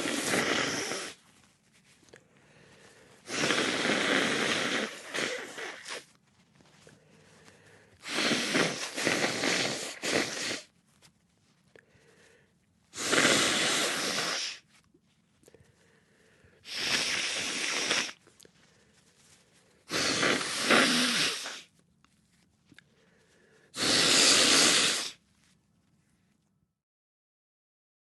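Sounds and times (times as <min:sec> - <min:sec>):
person blowing nose: 0:00.0 - 0:10.8, 0:12.9 - 0:14.8, 0:15.5 - 0:21.8, 0:23.1 - 0:25.3.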